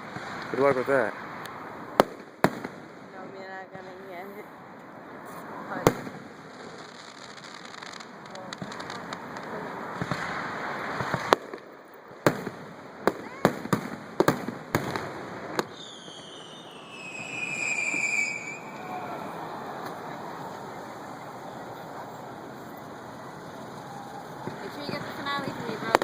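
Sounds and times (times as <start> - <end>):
fireworks crackling: 0.0 - 26.0
high firework whistle: 15.6 - 21.6.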